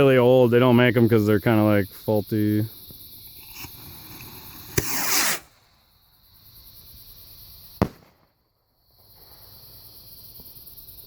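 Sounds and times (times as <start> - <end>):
firework rocket rushing hiss: 3.4 - 5.8
firework bang: 4.5 - 5.7, 7.8 - 8.4
firework launch pop: 4.7 - 5.6, 7.8 - 8.3.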